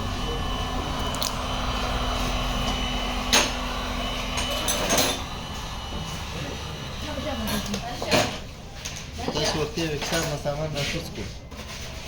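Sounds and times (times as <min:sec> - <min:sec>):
workshop background hum: 0:00.0 - 0:12.0.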